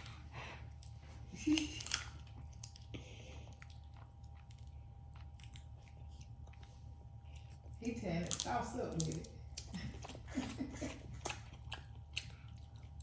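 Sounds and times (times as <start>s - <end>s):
chewing: 0.0s - 13.0s
steady low hum: 0.0s - 13.0s
crab shells crackling and snapping: 1.4s - 2.9s, 7.8s - 9.8s.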